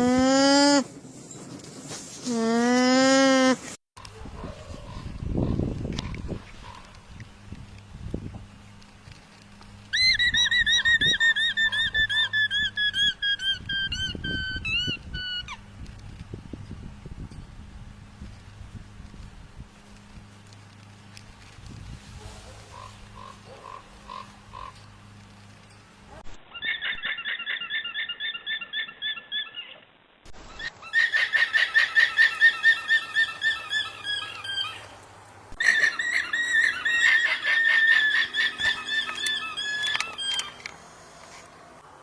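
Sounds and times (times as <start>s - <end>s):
alpacas shrill alarm calls: 9.9s - 15.6s, 22.6s - 24.8s, 26.5s - 29.8s, 30.5s - 35.0s, 35.6s - 40.7s.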